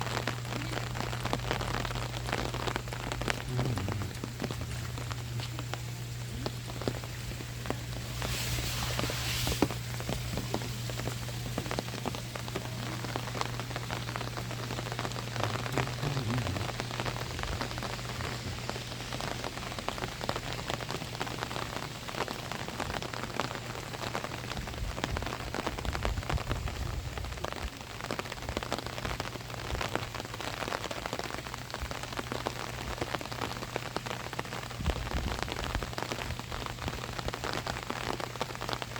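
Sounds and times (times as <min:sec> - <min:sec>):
steady low hum: 0:00.0 - 0:19.9
rain on an umbrella: 0:00.0 - 0:38.9.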